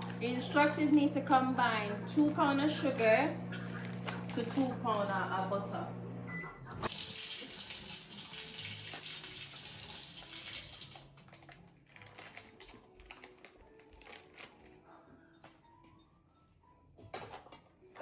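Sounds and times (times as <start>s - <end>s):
utensils clicking and tapping: 0.0s - 5.2s
kitchen tap running: 6.8s - 11.1s.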